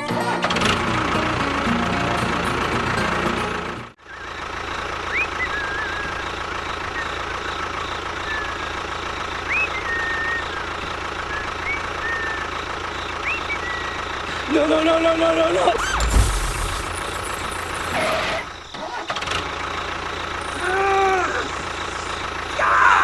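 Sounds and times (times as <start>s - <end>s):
small motor rattling drone: 15.6s - 20.5s.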